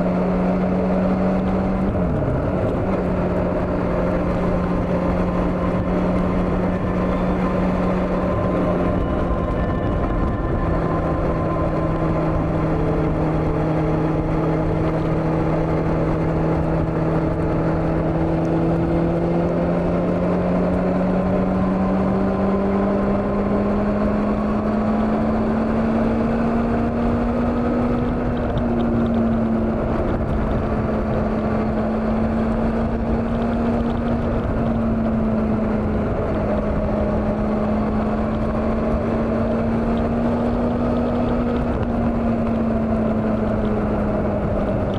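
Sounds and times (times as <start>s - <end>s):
motorcycle engine running: 0.0s - 44.9s
wind rushing: 0.9s - 21.8s.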